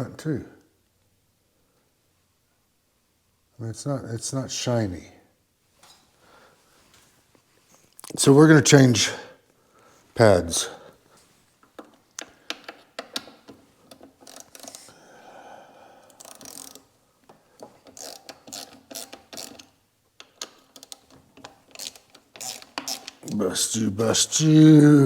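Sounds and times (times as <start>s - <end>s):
ratcheting: 12.5s - 14.9s, 16.1s - 16.9s, 17.6s - 23.4s
metal hand tools clicking: 16.1s - 16.8s, 17.8s - 23.4s.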